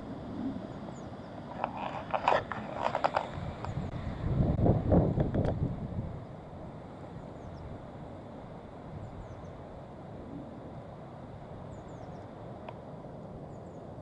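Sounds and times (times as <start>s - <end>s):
low outdoor background rumble: 0.0s - 14.0s
faint bird chirps: 11.7s - 12.3s.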